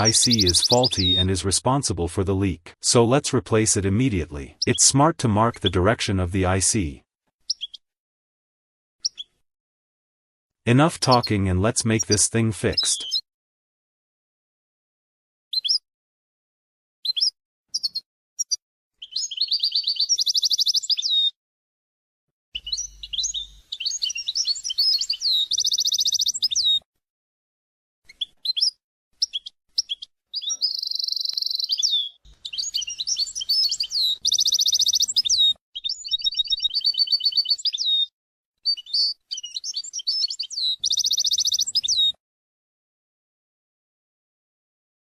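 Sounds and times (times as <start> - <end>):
songbird singing: 0.0 - 1.4, 17.1 - 21.3, 22.6 - 26.8, 28.2 - 38.1, 38.7 - 42.2.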